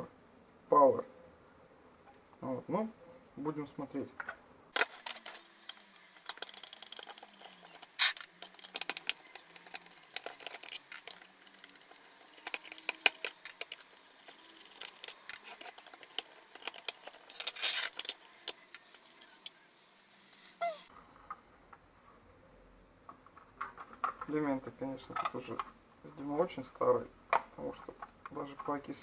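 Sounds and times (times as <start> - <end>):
plastic battery pack scraping: 4.8 - 18.9.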